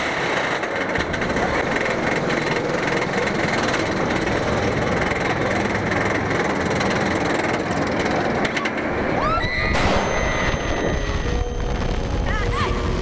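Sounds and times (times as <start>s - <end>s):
roller coaster rumbling on track: 0.0s - 13.0s
loud boom sound effect: 9.7s - 11.2s.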